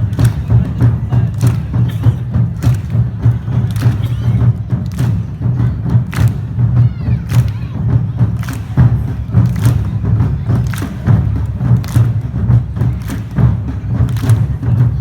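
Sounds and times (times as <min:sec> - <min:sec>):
taiko drums beating: 0:00.0 - 0:15.0.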